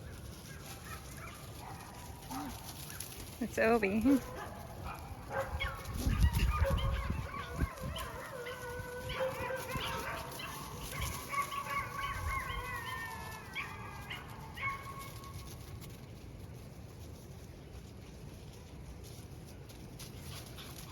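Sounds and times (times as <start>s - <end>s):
puppies whining and yipping: 5.4s - 15.6s.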